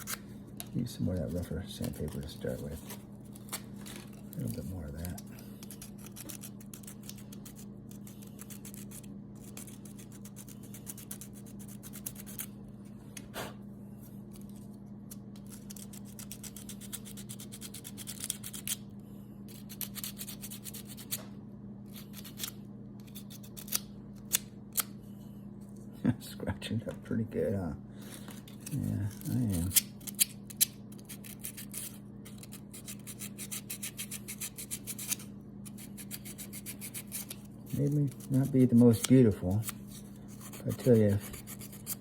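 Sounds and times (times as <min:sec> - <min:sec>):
steady low hum: 0:00.0 - 0:42.0
sandpaper scratching: 0:40.3 - 0:42.0.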